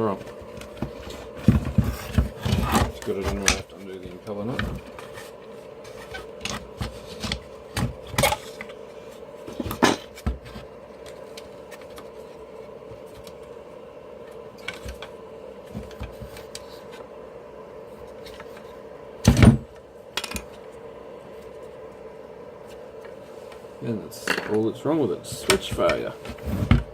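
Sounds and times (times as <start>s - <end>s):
faint steady hum: 0.0s - 26.9s
clicks and knocks of tools: 20.2s - 20.7s.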